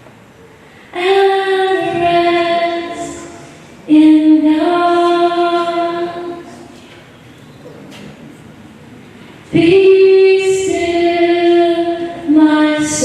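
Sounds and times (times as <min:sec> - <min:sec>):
woman singing unaccompanied: 0:00.9 - 0:06.7, 0:09.5 - 0:13.0.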